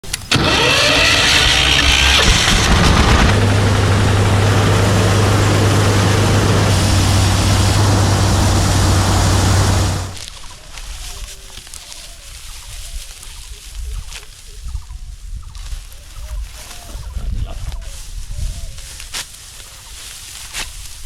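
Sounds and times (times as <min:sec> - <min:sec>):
loud engine running: 0:00.0 - 0:10.2.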